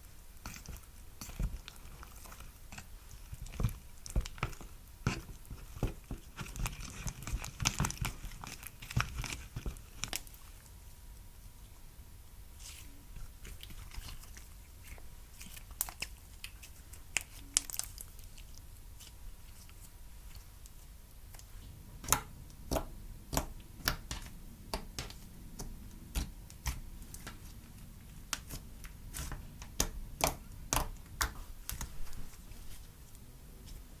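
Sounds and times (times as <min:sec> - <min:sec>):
slime squishing with crackling pops: 0:00.0 - 0:10.8, 0:12.6 - 0:32.6.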